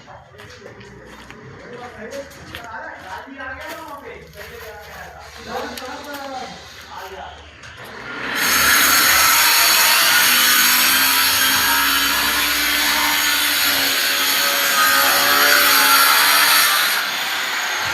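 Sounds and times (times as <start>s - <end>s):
power tool running: 5.2s - 17.9s.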